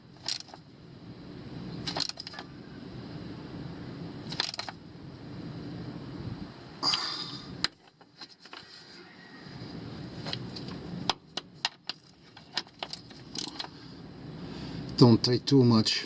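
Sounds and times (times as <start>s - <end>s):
low steady hum: 0.0s - 16.0s
wrench clinking and scraping metal: 11.6s - 13.8s.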